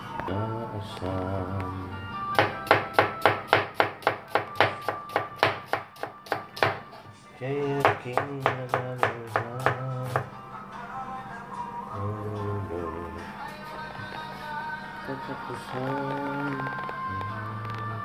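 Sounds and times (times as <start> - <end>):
background music: 0.0 - 18.0
knife chopping on cutting board: 2.4 - 6.9, 7.8 - 10.3.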